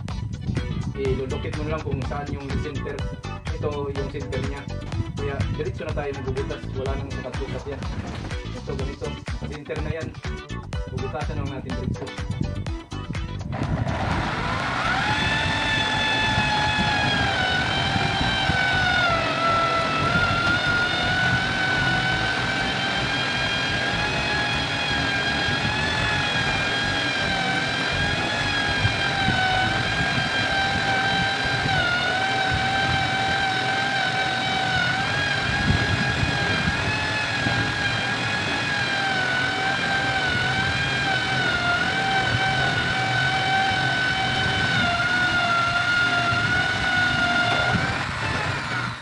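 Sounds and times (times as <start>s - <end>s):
electric drill boring through wood: 13.5s - 49.0s.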